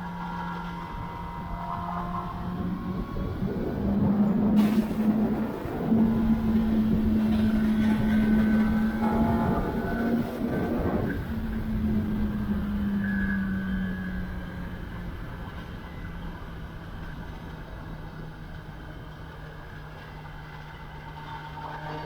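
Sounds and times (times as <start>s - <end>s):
road noise: 0.0s - 22.0s
wind: 0.0s - 22.0s
motorcycle engine running: 5.3s - 12.9s.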